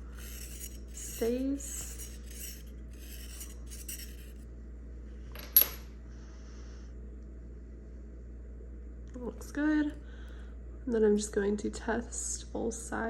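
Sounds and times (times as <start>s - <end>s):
metal scraping on sharpening stone: 0.0s - 4.4s.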